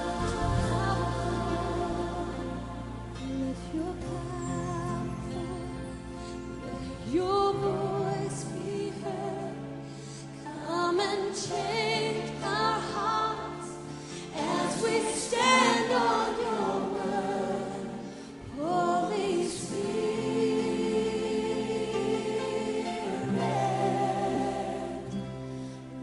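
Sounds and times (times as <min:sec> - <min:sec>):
held chords: 0:00.0 - 0:06.2
people singing worship song: 0:00.0 - 0:26.0.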